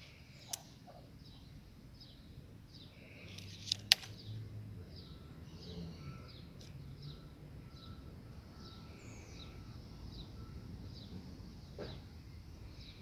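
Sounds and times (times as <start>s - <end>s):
bird chirping: 0.0s - 13.0s
sharp click: 0.5s - 0.7s.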